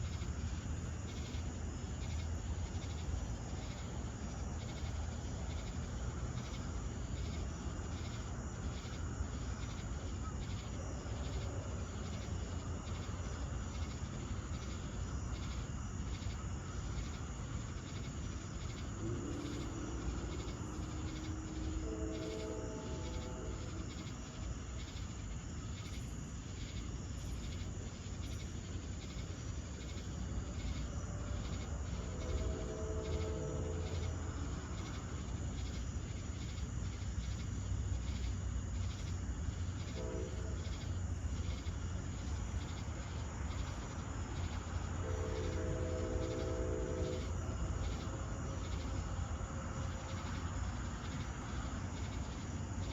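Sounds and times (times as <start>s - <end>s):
crickets chirping: 0.0s - 52.9s
steady low hum: 0.0s - 52.9s
held humming tone: 18.8s - 24.7s.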